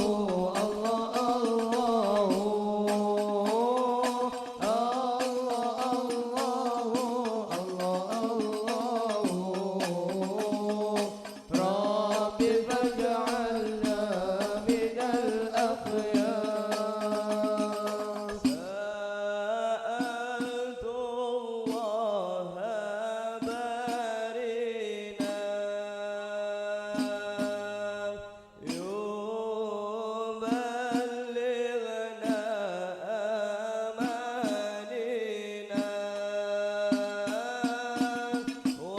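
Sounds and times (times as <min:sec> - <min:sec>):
frame drums: 0:00.0 - 0:18.8, 0:23.4 - 0:24.2, 0:25.2 - 0:25.6, 0:26.9 - 0:27.8, 0:30.4 - 0:31.4, 0:34.0 - 0:34.9, 0:35.7 - 0:38.9
devotional singing: 0:00.0 - 0:38.9.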